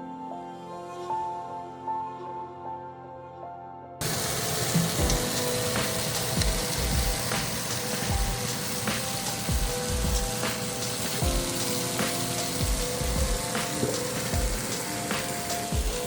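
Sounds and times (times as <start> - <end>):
background music with low beat: 4.0 - 16.0
food sizzling: 4.0 - 16.0.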